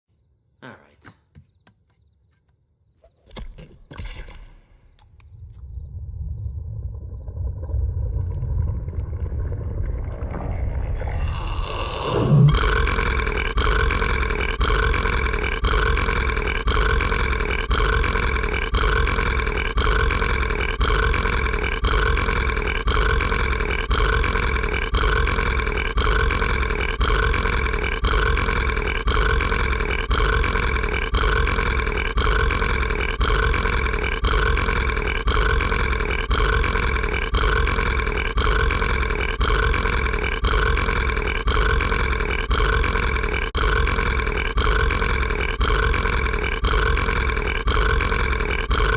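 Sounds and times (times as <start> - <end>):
cartoon monster burp: 10.4 - 48.9.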